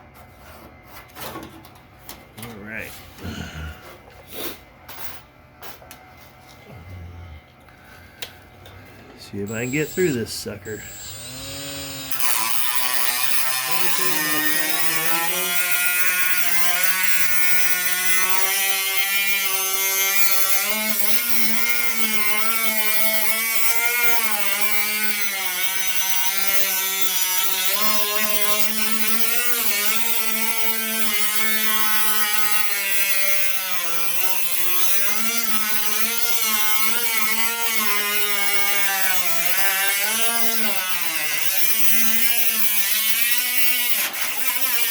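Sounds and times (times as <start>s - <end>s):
electric tool cutting sheet metal: 9.4s - 44.9s.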